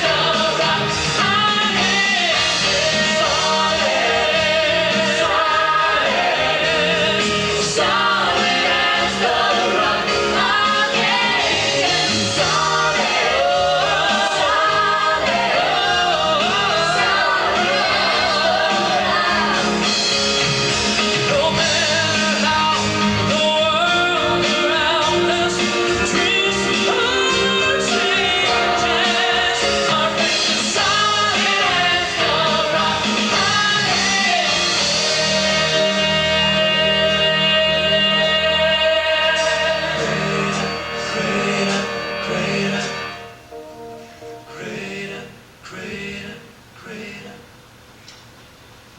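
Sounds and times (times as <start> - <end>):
rock band with bass and guitar: 0.0 - 43.2
person singing: 21.3 - 47.4.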